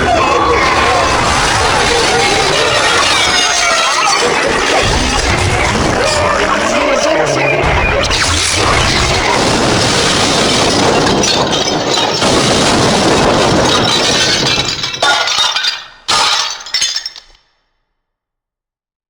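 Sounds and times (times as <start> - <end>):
debris clattering: 7.6 - 17.4
cartoon glass shattering crash: 7.8 - 17.4.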